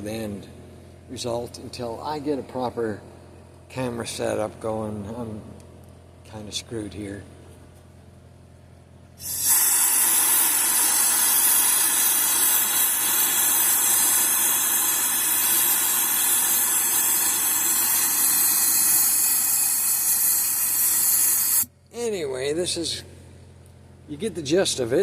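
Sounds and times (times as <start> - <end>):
air blower hissing: 9.2 - 21.7.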